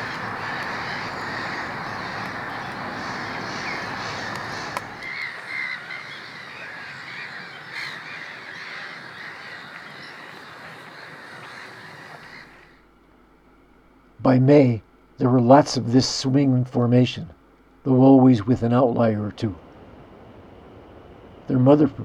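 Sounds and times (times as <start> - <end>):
steady rushing background: 0.0 - 12.4, 19.4 - 22.0
many birds calling: 0.0 - 12.8.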